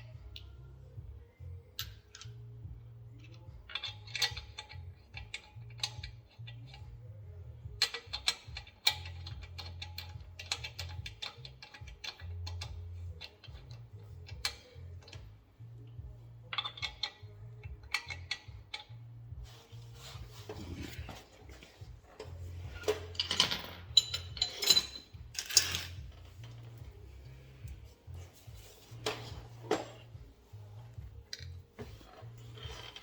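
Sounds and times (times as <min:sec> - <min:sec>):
low background hum: 0:00.0 - 0:33.0
ratchet wrench clicking: 0:01.8 - 0:02.4, 0:03.2 - 0:07.0, 0:07.8 - 0:15.3, 0:16.5 - 0:19.0.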